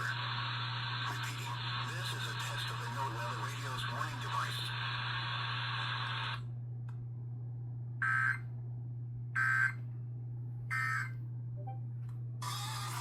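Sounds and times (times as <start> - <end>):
steady low hum: 0.0 - 13.0
buzzy digital squawks: 10.7 - 11.1.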